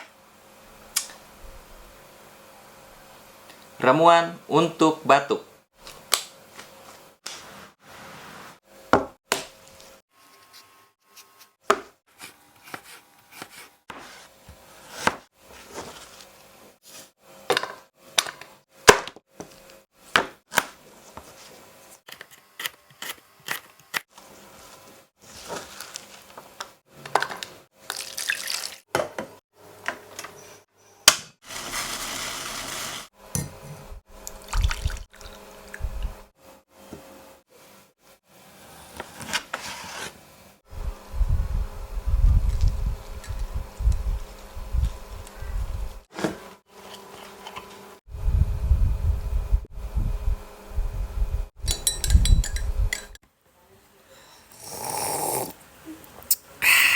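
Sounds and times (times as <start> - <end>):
running water: 34.3 - 35.8
utensils and dishes clinking: 51.6 - 53.2.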